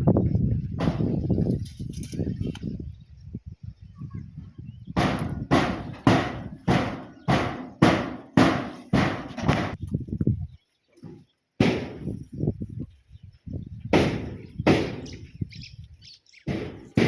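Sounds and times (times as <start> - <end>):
sharp thuds: 0.8 - 1.6, 5.0 - 9.8, 11.0 - 12.2, 13.9 - 15.3, 16.5 - 17.0.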